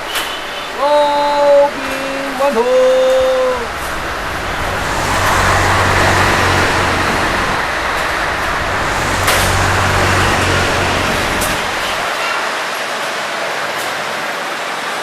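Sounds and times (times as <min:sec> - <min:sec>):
wide rushing sound: 0:01.0 - 0:12.2
low engine hum: 0:01.1 - 0:12.1.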